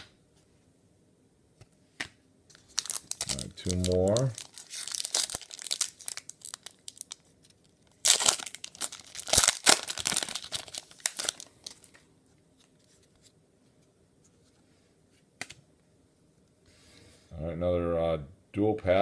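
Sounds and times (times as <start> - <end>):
wrapper tearing and crinkling: 2.5 - 12.0.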